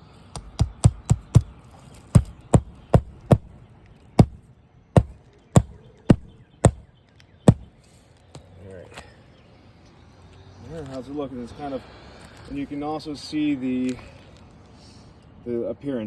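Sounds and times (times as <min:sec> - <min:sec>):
hammer striking nails: 0:00.4 - 0:01.5, 0:02.1 - 0:03.5, 0:04.2 - 0:04.4, 0:05.0 - 0:06.9, 0:07.5 - 0:07.7.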